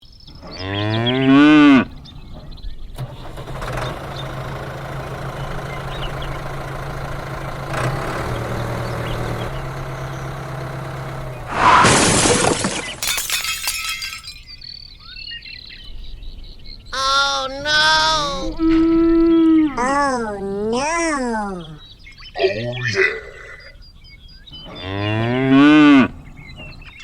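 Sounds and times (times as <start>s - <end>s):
engine humming: 0.3s - 14.5s, 24.5s - 27.0s
clattering crash: 11.5s - 14.6s.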